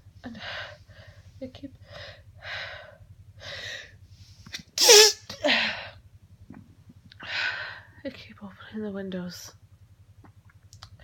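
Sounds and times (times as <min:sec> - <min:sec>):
woman sneezing: 0:04.8 - 0:05.5.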